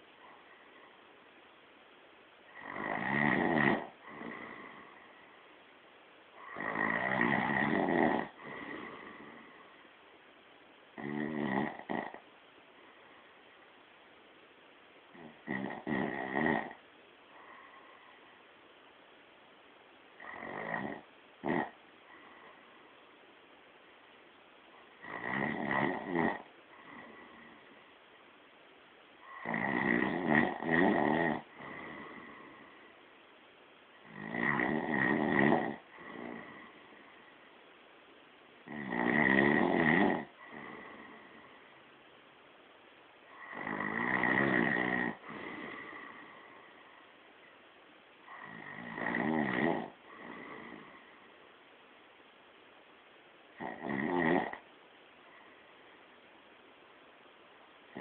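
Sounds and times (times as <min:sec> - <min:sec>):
person snoring: 0:02.5 - 0:05.2, 0:06.4 - 0:09.6, 0:11.0 - 0:12.2, 0:15.1 - 0:16.8, 0:20.2 - 0:22.6, 0:25.0 - 0:27.7, 0:29.2 - 0:32.8, 0:34.0 - 0:37.0, 0:38.7 - 0:41.7, 0:43.3 - 0:46.9, 0:48.3 - 0:51.2, 0:53.6 - 0:54.6
quiet breath out: 0:17.3 - 0:18.4.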